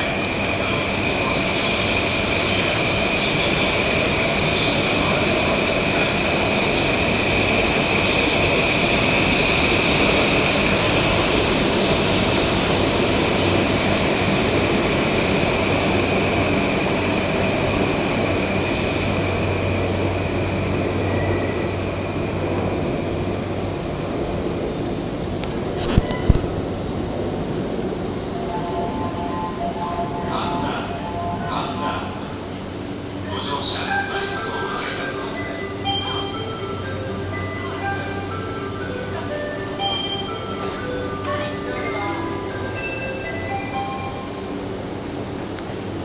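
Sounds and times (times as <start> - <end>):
electric train running past: 0.0 - 46.0.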